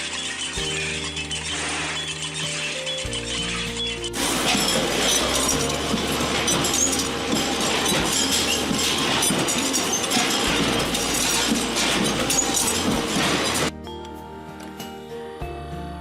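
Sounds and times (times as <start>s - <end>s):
factory machinery clattering: 3.4s - 13.7s.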